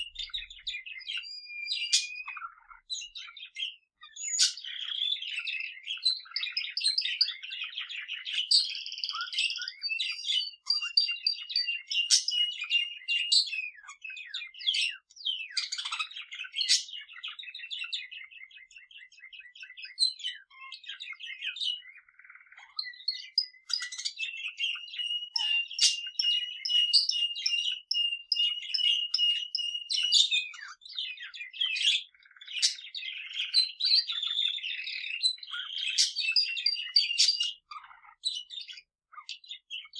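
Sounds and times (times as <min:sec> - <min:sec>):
canary singing: 0:00.0 - 0:39.9.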